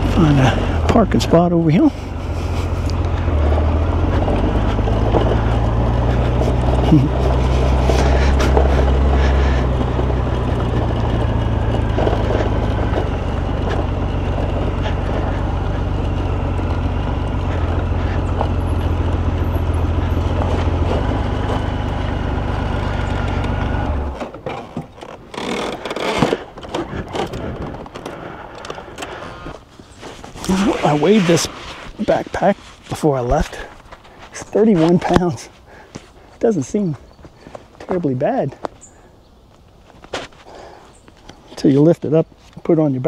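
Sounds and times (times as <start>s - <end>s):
motorcycle engine running: 0.0s - 39.1s
knocks and rustles of gear: 23.0s - 36.2s.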